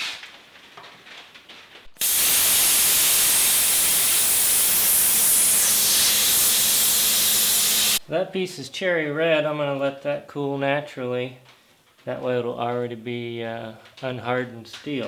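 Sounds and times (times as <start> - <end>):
gas torch flame hissing: 1.9 - 8.0.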